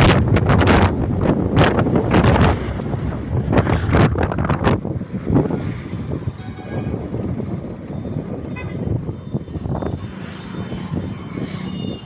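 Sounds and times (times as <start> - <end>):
traffic rumble: 0.0 - 12.0
vehicle horn toot: 6.4 - 7.0, 8.5 - 8.9.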